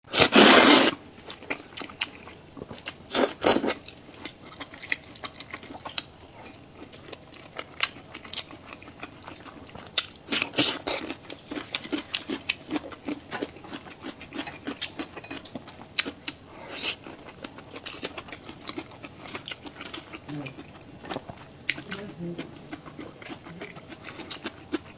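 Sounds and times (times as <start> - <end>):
short slurps: 0.2 - 1.0
chewing with wet mouth clicks: 1.2 - 24.9.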